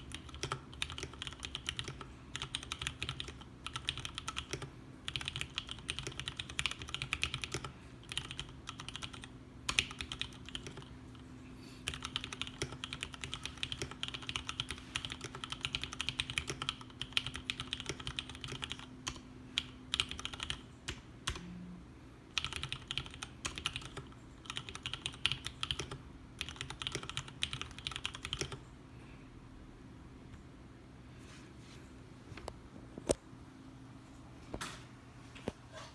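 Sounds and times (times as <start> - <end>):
typing on mechanical keyboard: 0.0 - 10.9, 11.8 - 21.5, 22.3 - 28.7.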